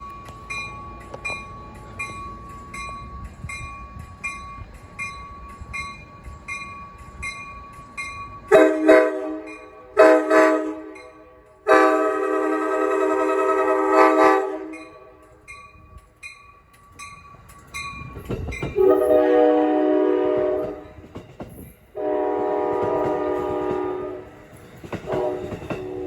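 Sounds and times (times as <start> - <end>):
train bell dinging: 0.0 - 26.0
locomotive horn blasts: 8.5 - 15.3, 18.8 - 20.9, 22.0 - 24.3, 25.1 - 26.0.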